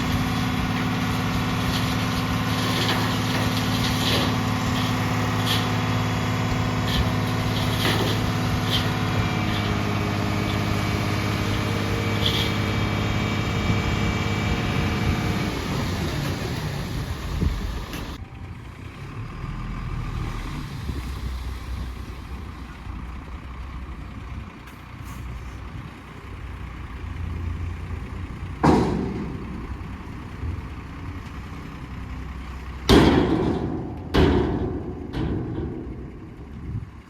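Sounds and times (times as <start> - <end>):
diesel machinery rumbling: 0.0 - 37.0
loud knocks: 28.6 - 30.1, 32.9 - 36.5.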